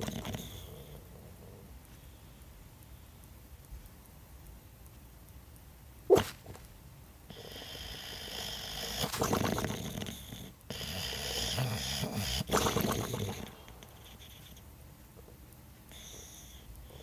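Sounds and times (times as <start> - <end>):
dog snoring: 0.0 - 1.8, 7.3 - 14.6, 15.9 - 17.0.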